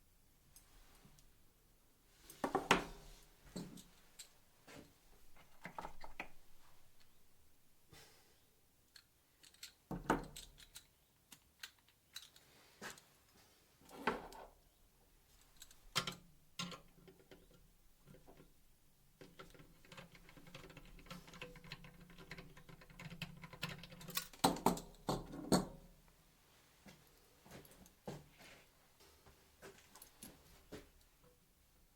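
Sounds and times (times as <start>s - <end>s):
clicks and knocks on computer parts: 19.2s - 25.8s.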